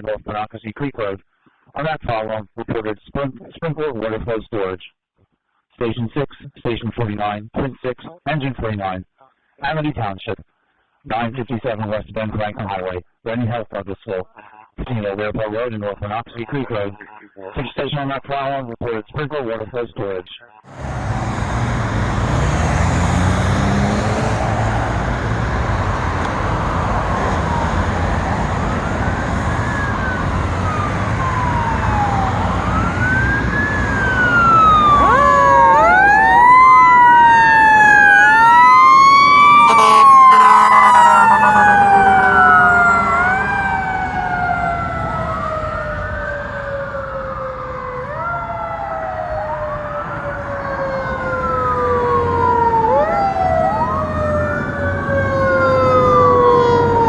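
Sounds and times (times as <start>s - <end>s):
fire truck sirens wailing: 20.7s - 57.0s
sharp horn blast: 39.7s - 43.1s.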